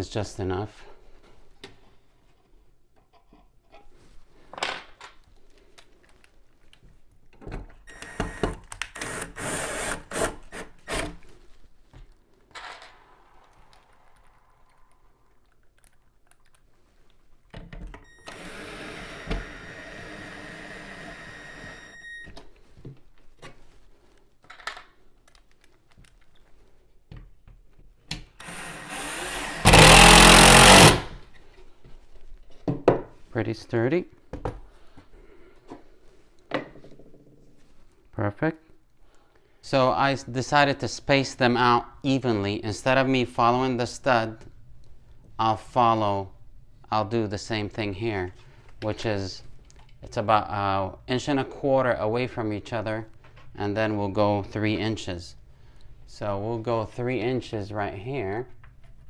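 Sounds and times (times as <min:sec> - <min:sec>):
power drill whirring: 0:07.9 - 0:11.1, 0:18.1 - 0:22.3, 0:28.4 - 0:31.2.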